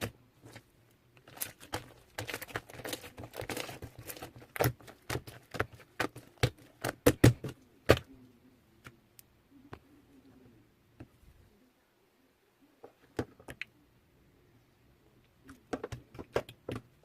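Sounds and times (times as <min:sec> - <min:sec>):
packaging rustling: 0:00.5 - 0:07.4.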